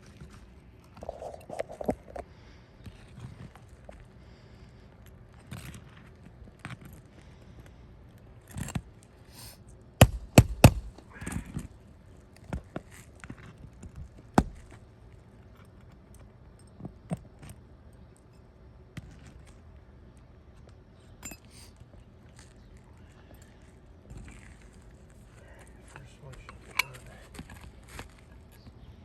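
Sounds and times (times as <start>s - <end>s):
sharp knocks and clicks: 10.0s - 11.0s
roofing tool prying shingles: 10.0s - 11.6s, 14.3s - 14.8s.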